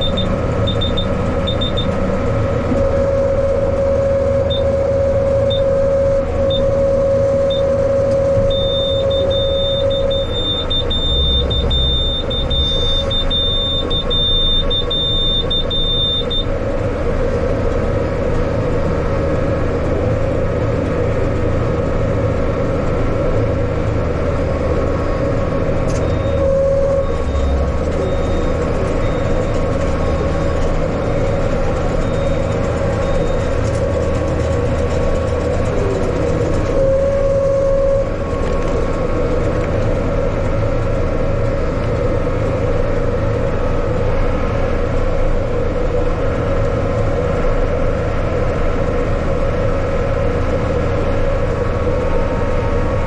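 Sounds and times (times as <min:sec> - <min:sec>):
high steady beep: 0:00.0 - 0:02.0, 0:04.0 - 0:16.5, 0:25.9 - 0:33.6
tractor diesel engine running: 0:00.0 - 0:53.0.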